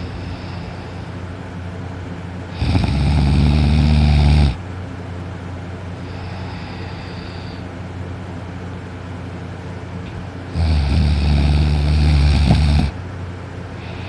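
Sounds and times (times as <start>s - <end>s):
soft breathing: 0.0s - 1.4s, 6.0s - 7.8s, 13.7s - 14.0s
person snoring loudly: 2.5s - 4.6s, 10.5s - 13.0s.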